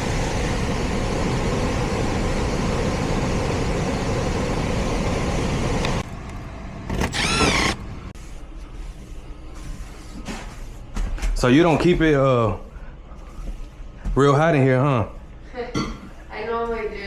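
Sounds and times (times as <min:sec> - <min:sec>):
blower air rushing: 0:00.0 - 0:08.2.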